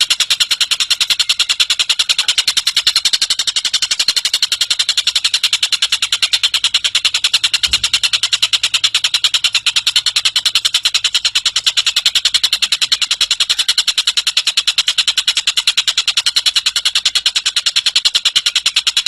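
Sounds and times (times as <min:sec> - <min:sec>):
bird trilling: 0:00.0 - 0:14.4.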